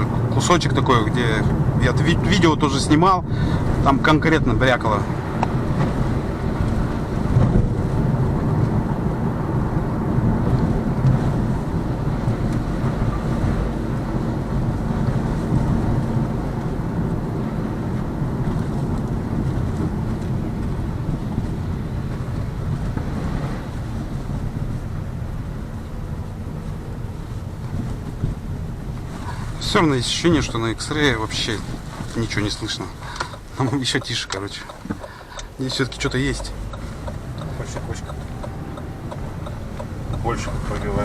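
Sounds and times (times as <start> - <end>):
road and tyre rumble: 0.0 - 41.0
car bumps: 5.3 - 7.8, 31.7 - 41.0.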